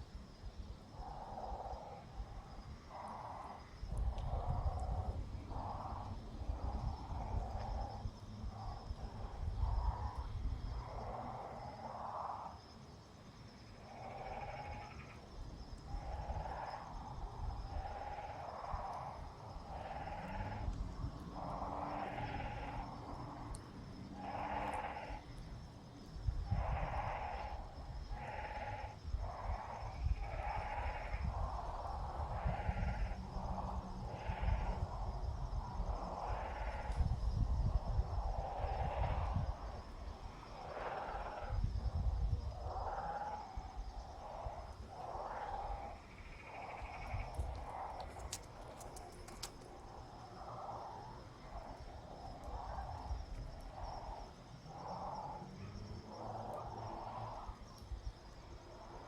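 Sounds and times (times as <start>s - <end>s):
insects chirring: 0.0s - 59.0s
soft hushing sounds: 26.3s - 57.9s.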